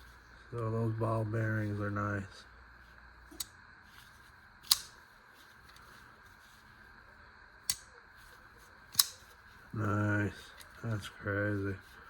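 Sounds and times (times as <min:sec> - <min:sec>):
pocket knife blade clicking: 0:08.9 - 0:09.2.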